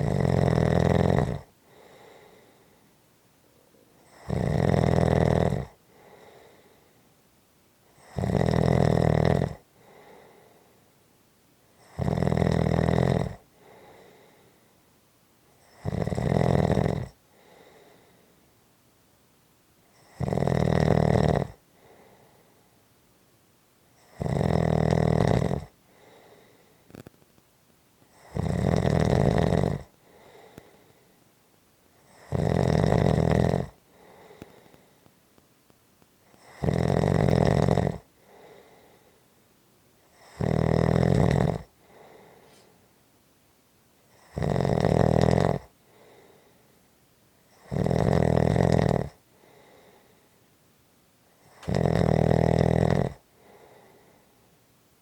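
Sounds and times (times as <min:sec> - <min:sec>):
person snoring: 0:00.0 - 0:02.6, 0:04.0 - 0:06.8, 0:08.0 - 0:10.5, 0:11.8 - 0:14.4, 0:15.6 - 0:18.1, 0:20.0 - 0:22.2, 0:24.0 - 0:27.1, 0:28.1 - 0:30.8, 0:32.1 - 0:34.8, 0:36.3 - 0:39.1, 0:40.1 - 0:42.7, 0:44.1 - 0:46.5, 0:47.6 - 0:50.1, 0:51.4 - 0:54.2
faint breathing: 0:01.5 - 0:04.3, 0:05.7 - 0:07.2, 0:09.7 - 0:11.0, 0:13.4 - 0:14.9, 0:17.1 - 0:18.6, 0:21.6 - 0:22.8, 0:25.7 - 0:27.2, 0:29.9 - 0:31.4, 0:33.8 - 0:35.2, 0:38.0 - 0:39.4, 0:41.7 - 0:42.9, 0:45.7 - 0:47.6, 0:49.2 - 0:50.5, 0:53.2 - 0:54.6.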